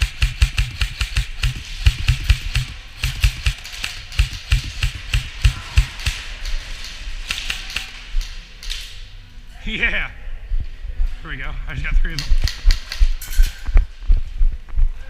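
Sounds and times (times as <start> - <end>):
gear clicking and rattling: 0.0 - 8.3.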